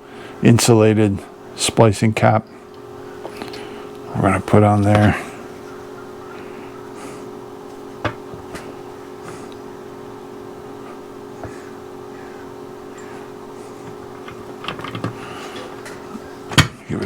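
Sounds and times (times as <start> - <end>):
steady background hum: 0.0 - 17.0
hands clicking and rustling wire: 13.7 - 16.7.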